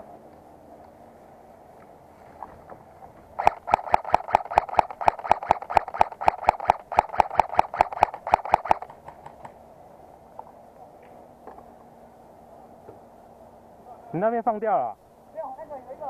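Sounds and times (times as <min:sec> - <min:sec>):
airsoft gun rapid shots: 0:03.4 - 0:09.0.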